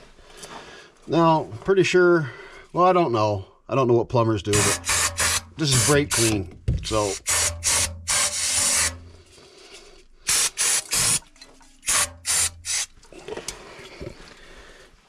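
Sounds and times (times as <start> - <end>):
aerosol can spraying: 4.6 - 6.4, 7.0 - 9.0, 10.3 - 13.0.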